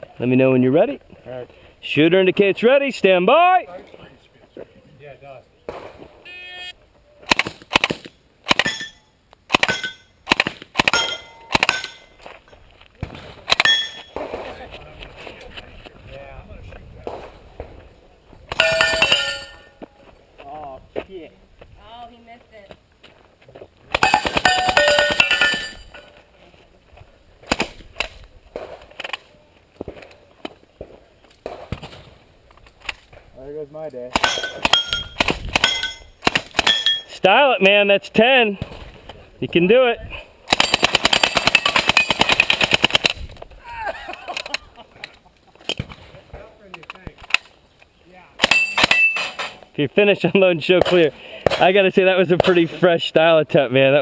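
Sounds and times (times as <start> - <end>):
steel targets ringing: 10.9 - 12.2, 13.6 - 14.2, 18.6 - 19.8, 24.1 - 26.1, 34.2 - 36.1.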